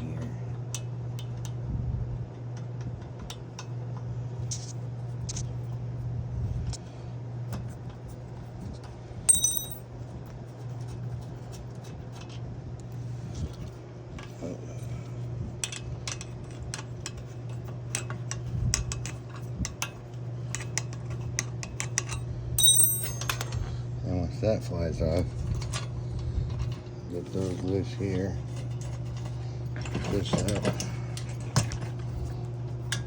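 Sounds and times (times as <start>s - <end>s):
steady low hum: 3.2s - 33.0s
metal tools clinking: 9.3s - 9.8s, 22.6s - 23.6s.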